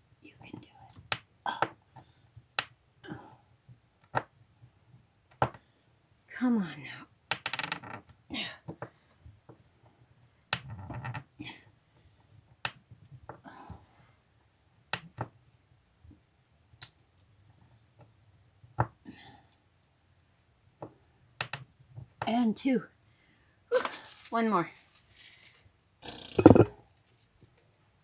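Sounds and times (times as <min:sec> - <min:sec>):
metal hardware clicks and knocks: 0:26.4 - 0:26.7.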